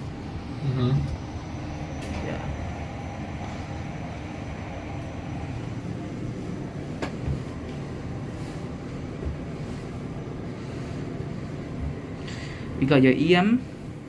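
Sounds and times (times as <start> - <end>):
lift car rumbling: 0.0 - 9.7.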